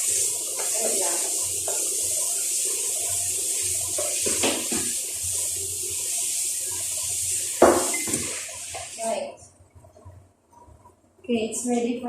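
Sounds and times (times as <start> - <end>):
water running from tap: 0.0 - 9.2.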